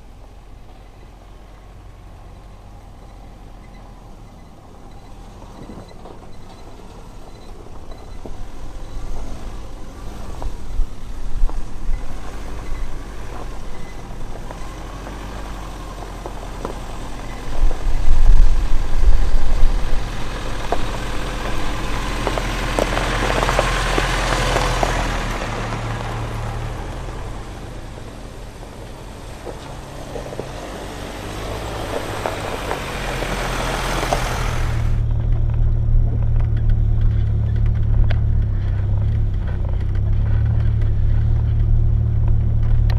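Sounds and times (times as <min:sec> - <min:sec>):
vehicle engine rumbling: 0:00.0 - 0:42.9
rushing noise: 0:23.6 - 0:38.8.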